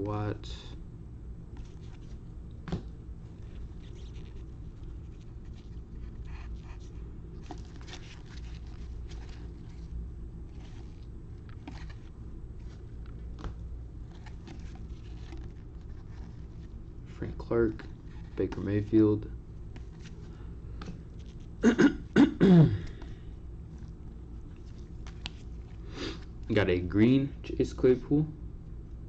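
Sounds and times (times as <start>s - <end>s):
steady low hum: 0.0s - 29.0s
trading cards clicking and rustling: 10.5s - 16.6s, 17.2s - 19.0s.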